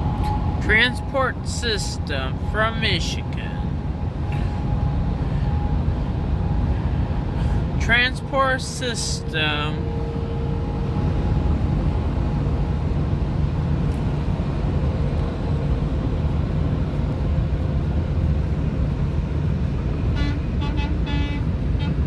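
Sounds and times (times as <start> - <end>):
car road and engine rumble: 0.0 - 22.0.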